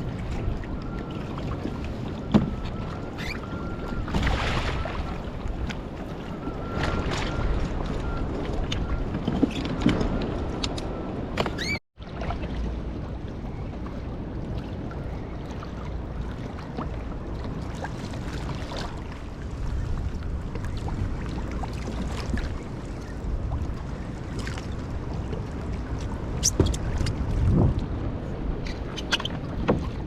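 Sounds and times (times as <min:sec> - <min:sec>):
water slapping against kayak hull: 0:00.2 - 0:10.8
wind buffeting microphone: 0:12.6 - 0:30.0.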